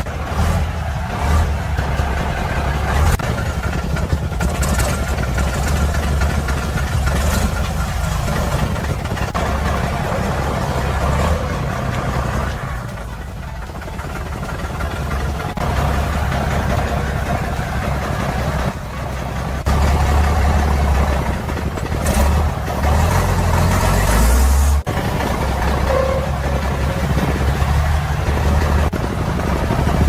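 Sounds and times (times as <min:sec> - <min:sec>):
truck diesel engine rumbling: 0:00.0 - 0:30.0.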